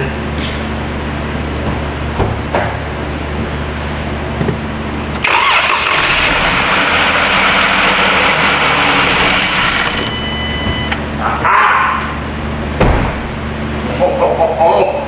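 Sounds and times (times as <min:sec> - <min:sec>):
car engine starting and running: 0:05.1 - 0:11.1.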